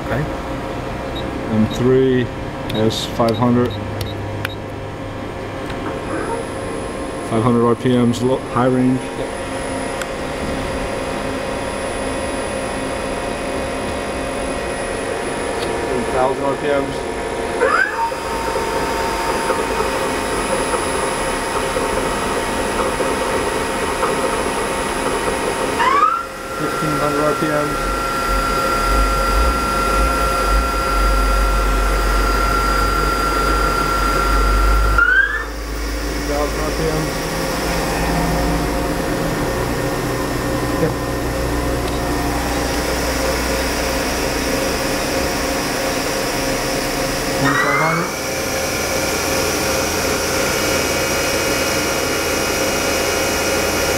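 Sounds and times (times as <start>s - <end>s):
machine hum: 0.0s - 53.9s
lathe spindle whine: 4.5s - 53.9s.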